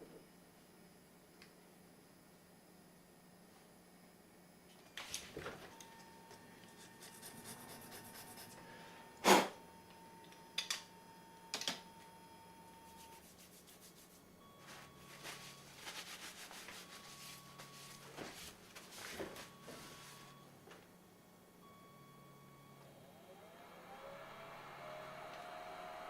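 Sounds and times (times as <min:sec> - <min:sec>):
three d printer whine: 0:05.4 - 0:13.2, 0:14.3 - 0:15.8, 0:16.7 - 0:26.0.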